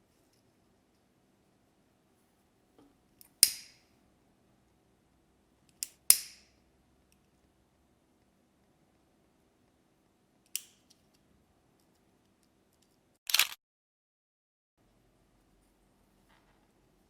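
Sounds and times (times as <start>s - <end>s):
sharp mechanical clicks: 13.3s - 13.6s.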